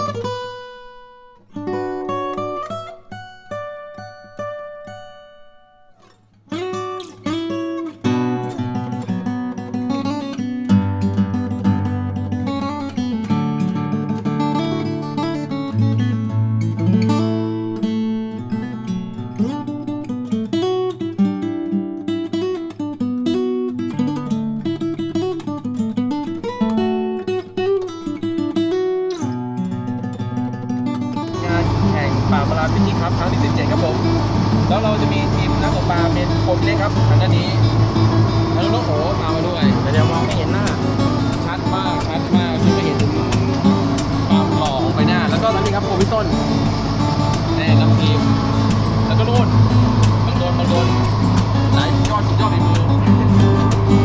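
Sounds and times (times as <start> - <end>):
acoustic guitar music: 0.0 - 54.0
low bass part: 31.4 - 54.0.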